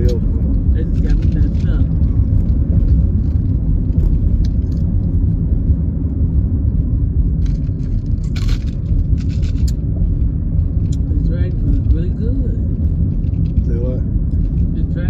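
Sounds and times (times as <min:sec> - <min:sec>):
road and engine rumble in car: 0:00.0 - 0:15.0.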